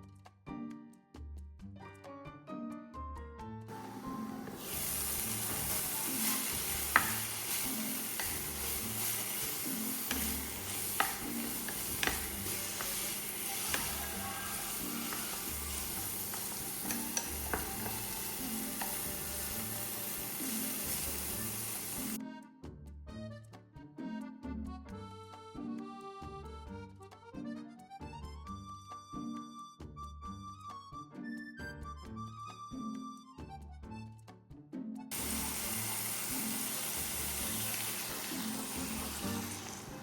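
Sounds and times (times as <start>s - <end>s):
food sizzling in oil: 3.7s - 22.2s, 35.1s - 40.0s
utensil clicking against pan: 3.8s - 22.2s.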